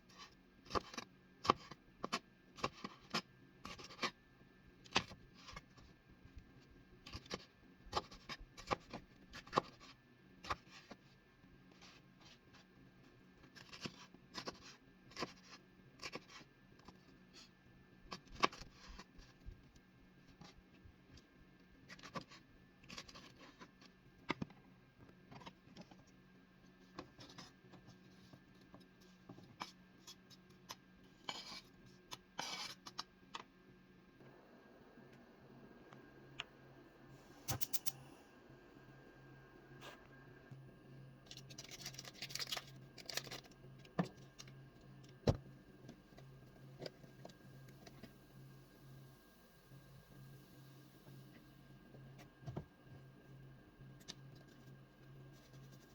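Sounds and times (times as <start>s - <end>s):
faint steady hum: 0.0s - 55.9s.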